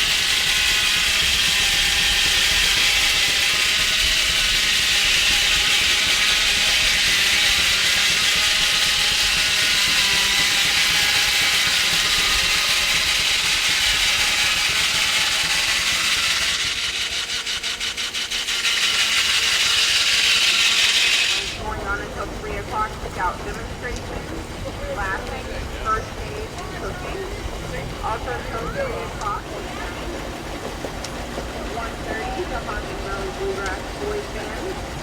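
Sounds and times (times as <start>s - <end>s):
saw blade cutting log: 0.0s - 21.7s
machinery running: 0.0s - 35.0s.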